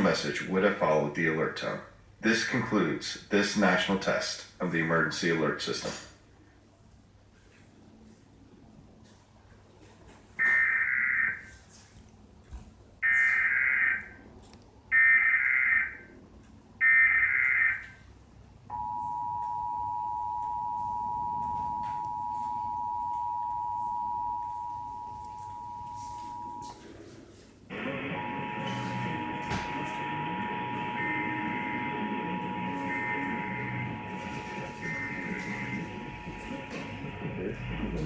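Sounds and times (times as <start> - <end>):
two-tone attention signal: 18.7 - 26.8, 27.7 - 38.0
digital data signal bursts: 27.8 - 38.0.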